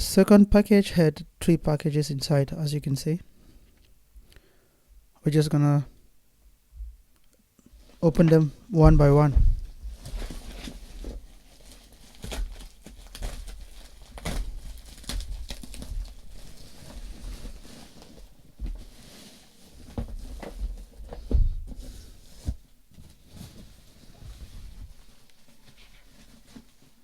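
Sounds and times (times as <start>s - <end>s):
plastic and paper rustling: 8.9s - 27.0s.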